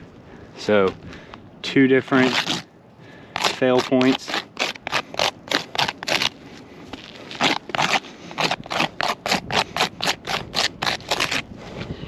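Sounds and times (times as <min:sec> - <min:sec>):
scraping on roof shingles: 0:03.4 - 0:11.4.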